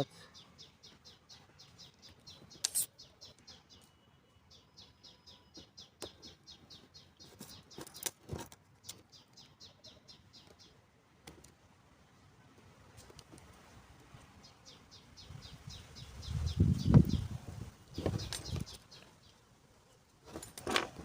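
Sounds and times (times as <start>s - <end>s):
bird chirping quickly: 0.0s - 8.1s, 14.4s - 19.0s.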